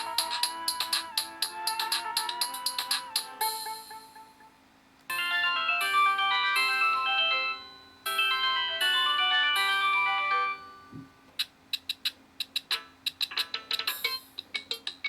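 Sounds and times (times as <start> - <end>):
synthesized ringtone melody: 0.0 - 11.0.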